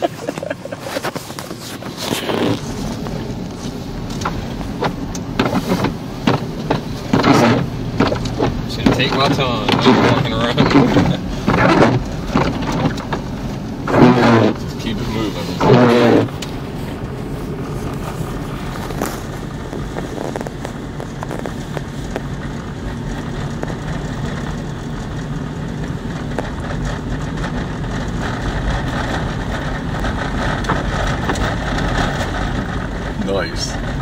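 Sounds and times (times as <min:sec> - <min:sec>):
snow crackling against vehicle: 0:00.0 - 0:34.0
tyres churning snow: 0:00.0 - 0:34.0
vehicle engine under load: 0:00.0 - 0:34.0.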